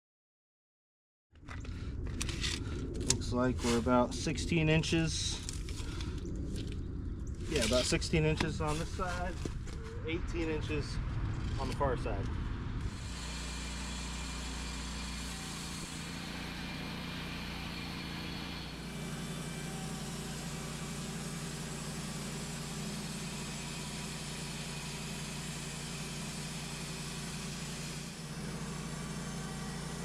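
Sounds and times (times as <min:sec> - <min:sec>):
sawmill engine running: 0:07.5 - 0:11.8, 0:12.8 - 0:30.0.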